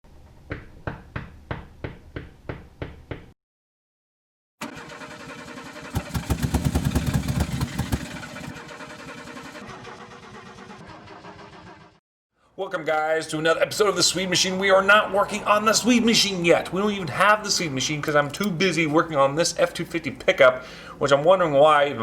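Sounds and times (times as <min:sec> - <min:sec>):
engine cranking: 0:04.6 - 0:12.0
engine running and revving: 0:05.9 - 0:12.0.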